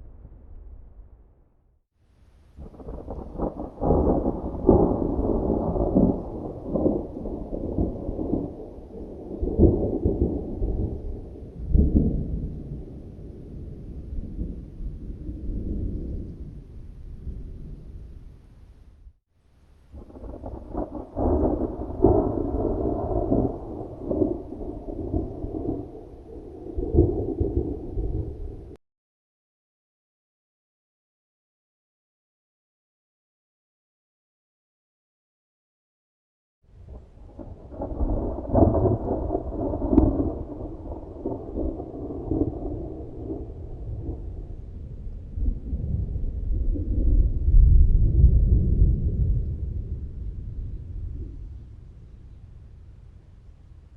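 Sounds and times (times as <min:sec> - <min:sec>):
thunder rumbling: 0:02.4 - 0:19.1, 0:19.8 - 0:28.8, 0:36.8 - 0:53.9
thunder crack: 0:02.6 - 0:16.4, 0:19.9 - 0:28.8, 0:36.9 - 0:51.6.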